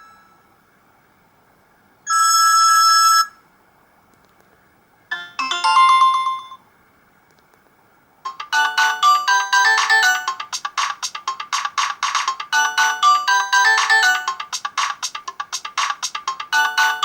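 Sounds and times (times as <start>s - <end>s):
electronic phone ringtone: 2.1s - 3.4s, 5.1s - 6.6s, 8.3s - 17.0s.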